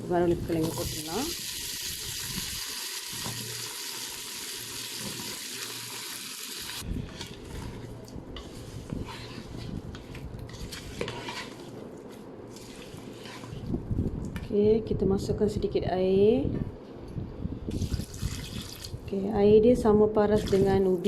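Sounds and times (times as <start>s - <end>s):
food sizzling in oil: 0.6s - 6.8s
spatula scraping a pot: 7.0s - 13.7s.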